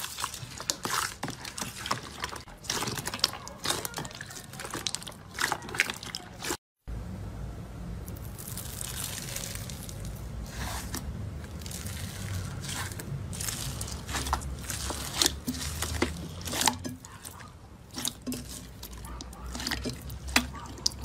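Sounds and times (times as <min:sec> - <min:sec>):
low steady rumble: 0:06.8 - 0:21.0.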